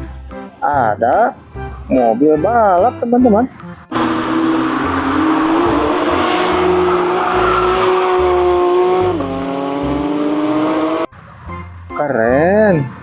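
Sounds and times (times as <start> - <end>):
racing car engine accelerating: 3.9 - 11.2.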